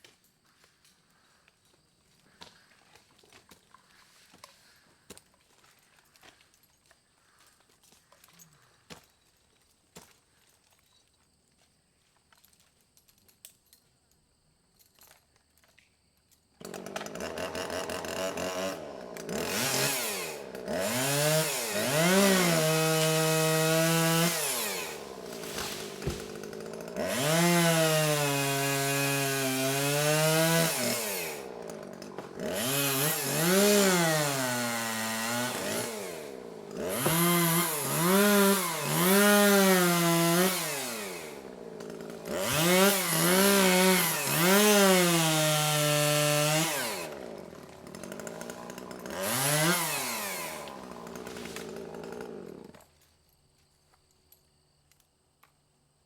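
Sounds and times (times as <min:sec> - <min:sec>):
chainsaw revving: 0:16.6 - 0:52.9.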